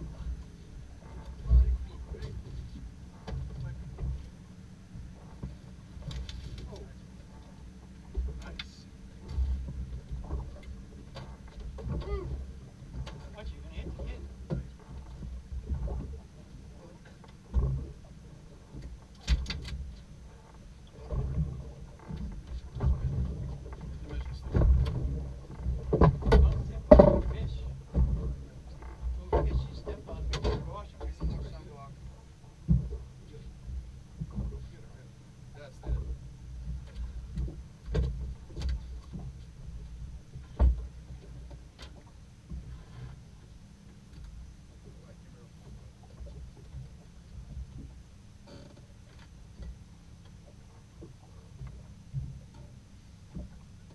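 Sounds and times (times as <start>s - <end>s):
boat low rumbling: 0.0s - 53.9s
knocks and thumps: 24.5s - 28.4s.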